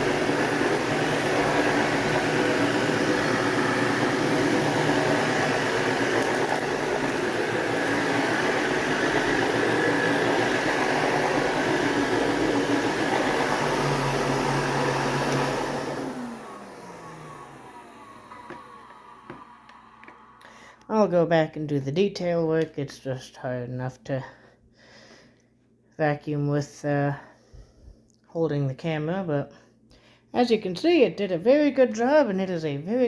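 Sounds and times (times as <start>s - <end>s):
vacuum cleaner running on carpet: 0.0s - 20.5s
vacuum motor winding down: 0.0s - 20.8s.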